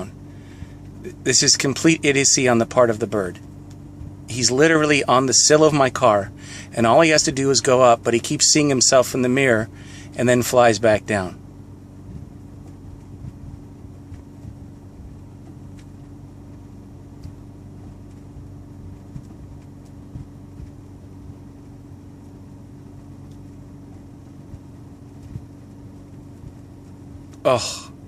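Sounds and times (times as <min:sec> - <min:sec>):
low machine hum: 0:00.0 - 0:28.0.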